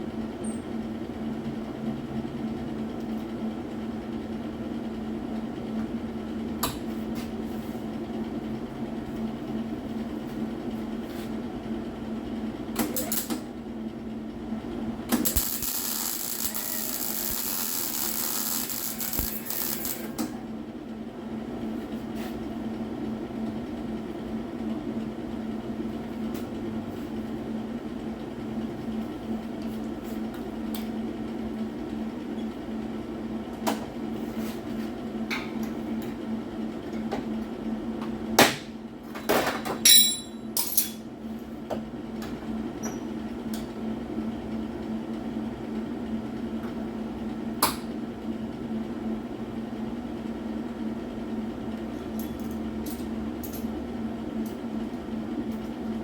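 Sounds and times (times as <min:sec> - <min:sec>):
ringing metallic clanks: 0:39.9 - 0:40.4.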